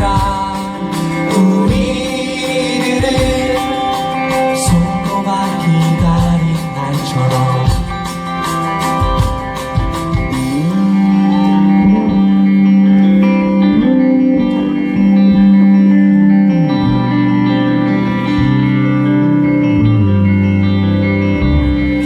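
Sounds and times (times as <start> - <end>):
bass guitar: 0.0 - 22.0
electric guitar sliding notes: 0.0 - 22.0.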